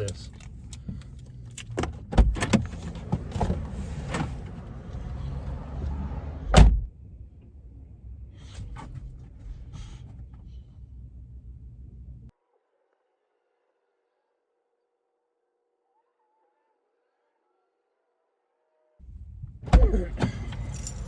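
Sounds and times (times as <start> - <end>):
car engine idling: 2.5 - 6.1
car door shutting thud: 6.5 - 6.9.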